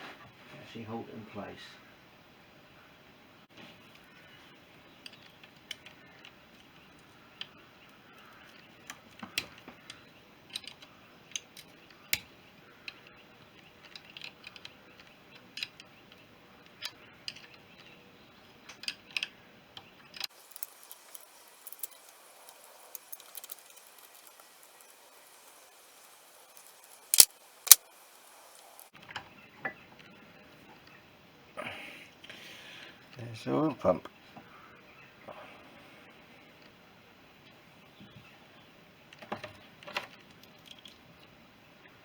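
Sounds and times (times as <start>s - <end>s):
metal parts clicking and clinking: 20.5s - 24.3s, 27.1s - 27.8s.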